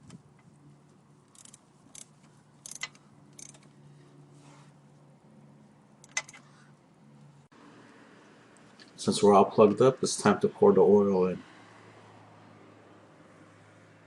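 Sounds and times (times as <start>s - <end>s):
metal tool clicking and scraping: 1.3s - 3.7s, 6.0s - 6.4s.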